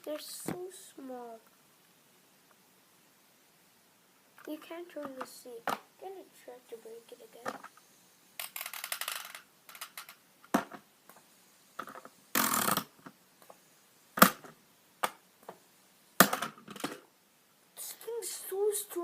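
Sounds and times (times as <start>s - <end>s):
fidget spinner knocks and cracks: 8.4s - 10.9s, 14.2s - 15.6s, 16.2s - 17.0s.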